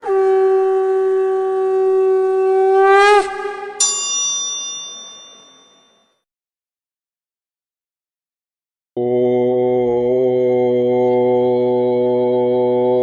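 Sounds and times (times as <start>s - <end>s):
conch shell blown: 0.0s - 4.0s.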